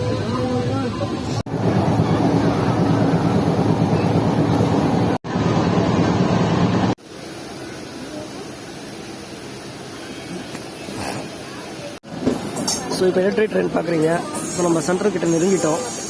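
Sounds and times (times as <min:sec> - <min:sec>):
train rumble inside coach: 0:00.0 - 0:07.0.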